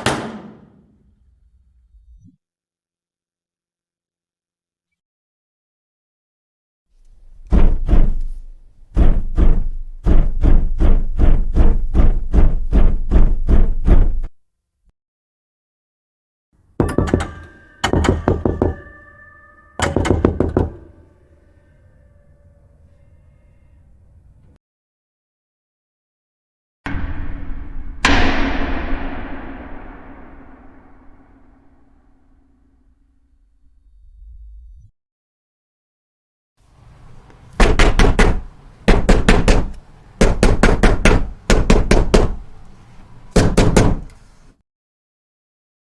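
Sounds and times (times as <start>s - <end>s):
knuckles knocking on door: 9.0s - 14.2s, 16.8s - 18.9s, 19.8s - 20.9s, 37.6s - 42.4s, 43.4s - 44.1s
faint steady ringing: 16.8s - 23.7s.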